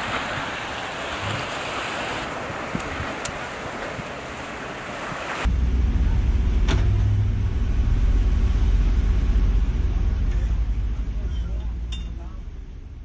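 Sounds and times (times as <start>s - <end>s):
surf and wind hiss: 0.0s - 5.5s
large vehicle engine rumbling: 5.5s - 13.0s.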